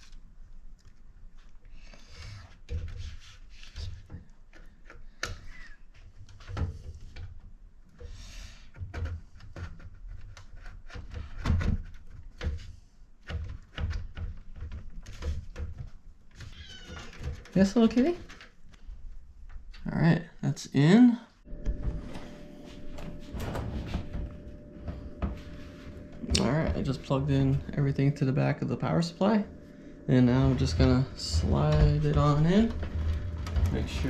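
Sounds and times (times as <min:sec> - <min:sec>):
computer parts knocking and clicking: 0:13.2 - 0:16.5, 0:30.1 - 0:34.0.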